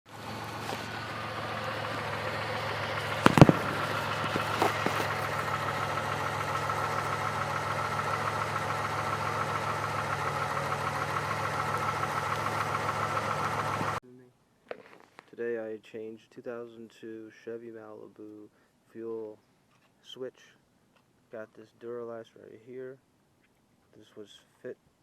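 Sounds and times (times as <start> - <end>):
car engine idling: 0.0 - 14.0
sharp knocks: 1.6 - 7.4.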